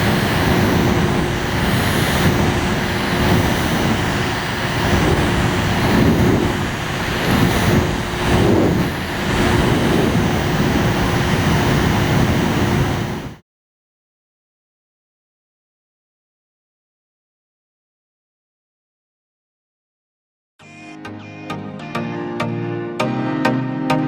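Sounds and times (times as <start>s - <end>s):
electric fan whirring: 0.0s - 13.4s.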